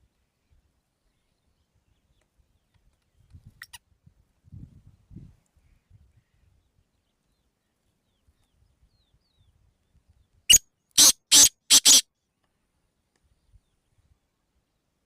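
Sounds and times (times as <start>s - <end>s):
bird giving harsh grating calls: 11.0s - 12.0s.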